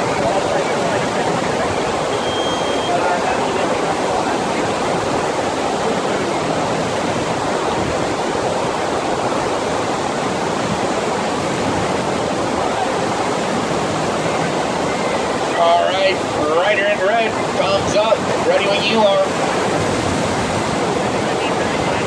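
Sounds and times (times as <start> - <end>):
rushing pumped water: 0.0 - 22.0.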